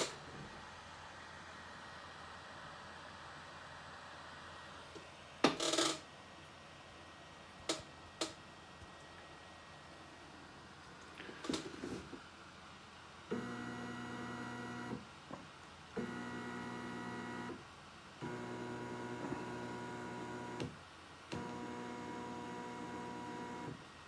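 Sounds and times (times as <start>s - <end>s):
milling machine motors whining: 13.3s - 15.0s, 16.0s - 17.6s, 18.2s - 23.8s.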